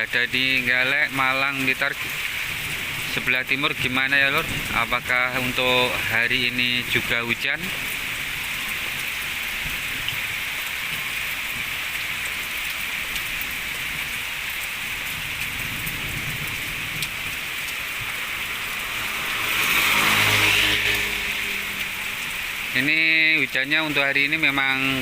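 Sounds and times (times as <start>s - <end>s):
rain pattering on surfaces: 0.0s - 25.0s.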